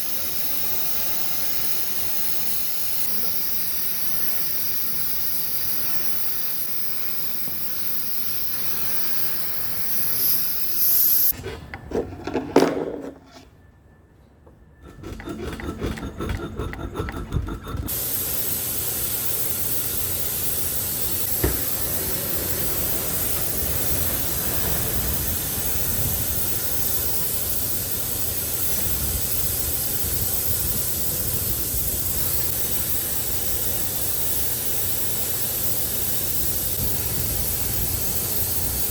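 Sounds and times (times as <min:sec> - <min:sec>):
welding torch flame hissing: 0:00.0 - 0:11.4, 0:17.4 - 0:38.9
loud irregular noise: 0:21.0 - 0:27.0.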